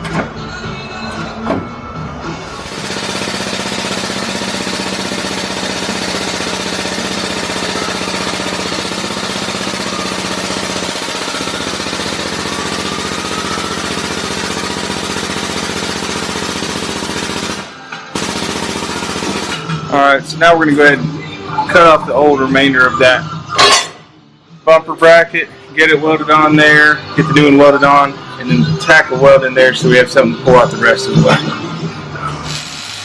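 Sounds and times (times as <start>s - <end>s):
air hammer on sheet metal: 32.3s - 33.0s.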